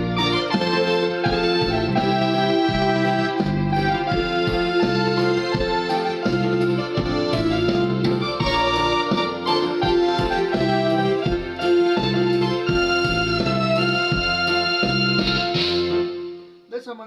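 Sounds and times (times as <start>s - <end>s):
keyboard playing march: 0.0s - 16.7s.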